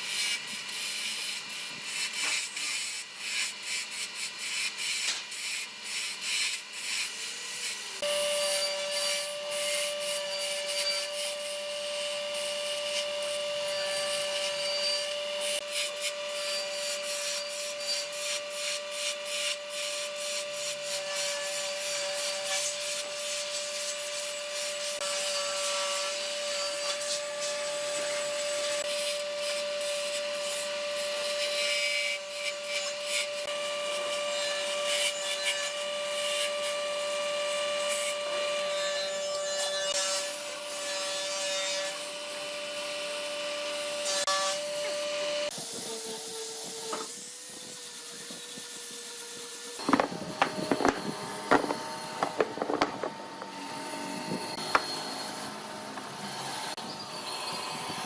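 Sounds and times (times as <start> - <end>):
wood being sanded: 0.0 - 36.8, 45.5 - 57.7
sharp knocks: 49.8 - 53.6
steady motor hum: 49.8 - 58.0.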